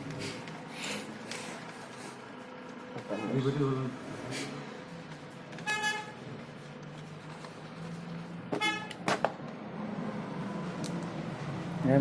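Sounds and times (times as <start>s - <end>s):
vehicle horn toots: 5.6s - 6.2s, 8.6s - 9.0s.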